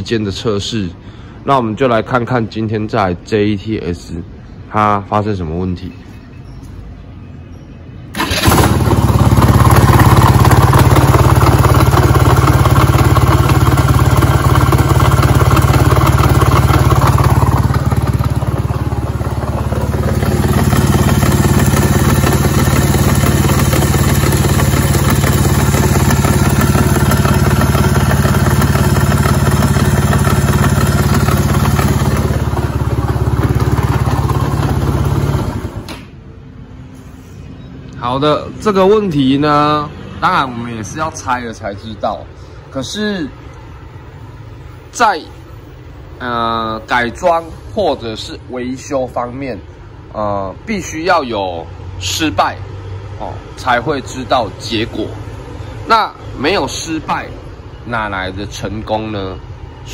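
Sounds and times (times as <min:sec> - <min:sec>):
loud abnormal engine noise: 0:08.1 - 0:37.3, 0:38.1 - 0:59.9
scooter engine running: 0:08.2 - 0:35.9.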